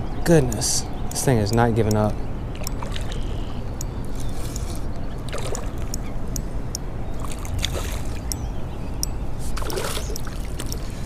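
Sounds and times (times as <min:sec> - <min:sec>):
sharp clicks: 0:00.3 - 0:06.8
river water flowing: 0:01.9 - 0:11.0.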